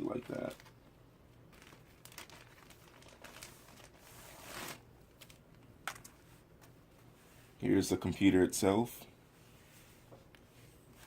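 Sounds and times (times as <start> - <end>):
packaging rustling and crinkling: 0.0 - 6.3.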